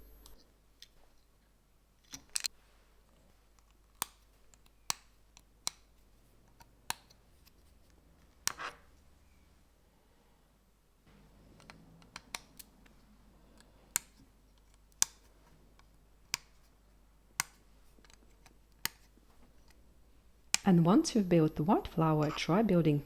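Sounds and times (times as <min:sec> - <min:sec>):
plastic pieces clicking together: 0:02.0 - 0:02.5.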